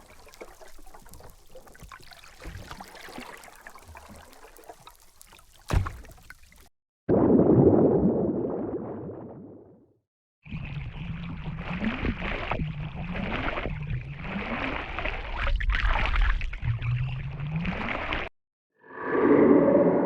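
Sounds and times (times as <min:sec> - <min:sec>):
water bubbling and gurgling: 0:00.0 - 0:09.8, 0:10.4 - 0:18.3
sound effect: 0:18.8 - 0:20.0.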